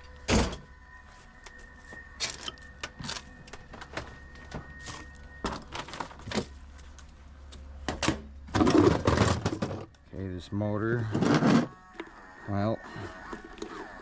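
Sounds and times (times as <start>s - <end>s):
low steady hum: 0.0s - 14.0s
scrap metal parts clanking: 8.0s - 9.9s.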